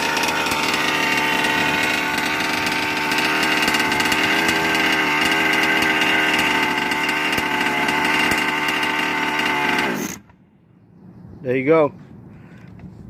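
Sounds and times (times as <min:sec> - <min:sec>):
small two-stroke engine running: 0:00.0 - 0:10.4.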